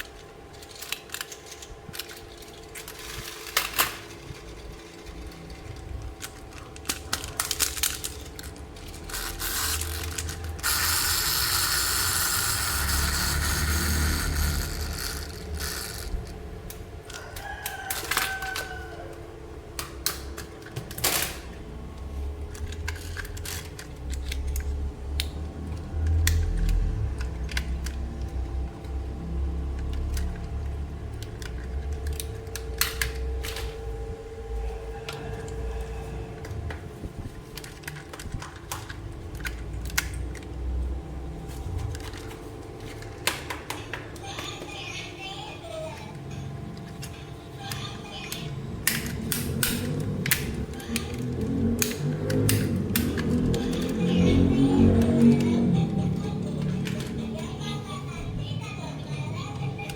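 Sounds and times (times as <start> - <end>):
plastic toy parts clicking: 0.0 - 18.9, 19.7 - 21.5, 22.5 - 28.4, 29.7 - 33.7, 37.5 - 40.8, 46.8 - 57.8, 59.6 - 59.9.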